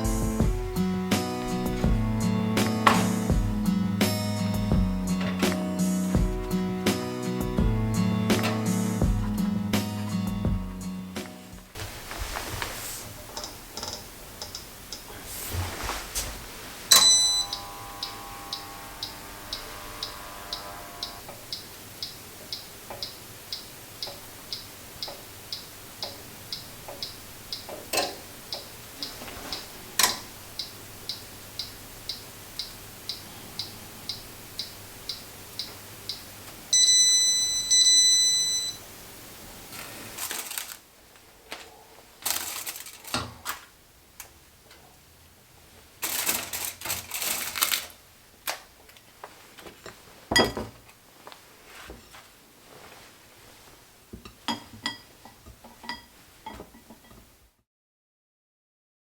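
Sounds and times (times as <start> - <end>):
clattering handling noises: 5.2 - 5.7, 41.5 - 43.7
timer bell ringing: 16.9 - 18.6, 36.7 - 38.8
cooking timer ticking: 16.9 - 38.8.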